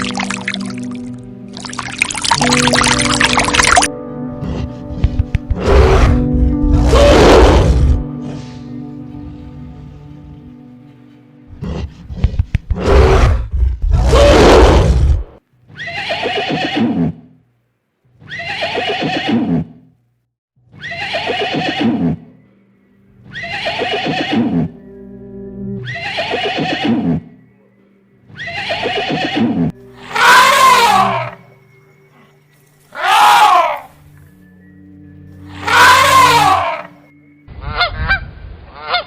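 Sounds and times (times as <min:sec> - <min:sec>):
animal calling: 0:15.7 - 0:17.2, 0:18.2 - 0:19.8, 0:20.7 - 0:22.6, 0:23.2 - 0:24.8, 0:25.8 - 0:31.5, 0:32.1 - 0:34.2, 0:35.4 - 0:39.0
faint background music: 0:20.6 - 0:38.1.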